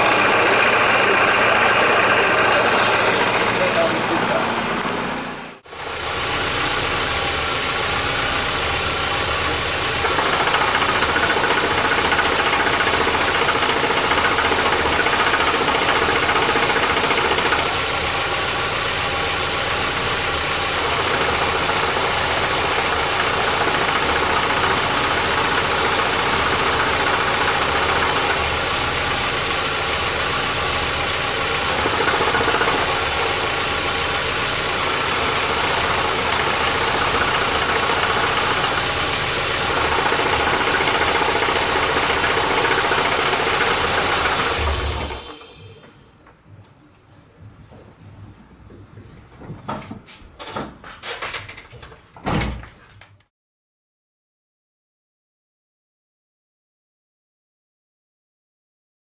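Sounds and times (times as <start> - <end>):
car engine idling: 0.0 - 49.1
clutch knocking rattle: 9.9 - 17.8, 31.6 - 33.2, 35.0 - 45.4.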